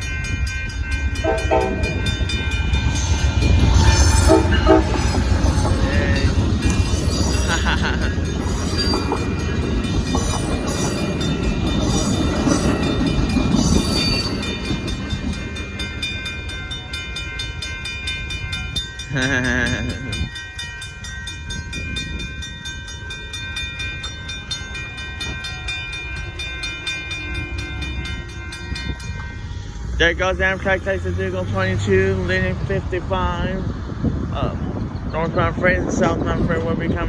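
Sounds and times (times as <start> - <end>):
train wheels clattering over rails: 0.0 - 18.0
wavering tone: 0.0 - 19.3
crossing bell ringing: 0.0 - 32.9.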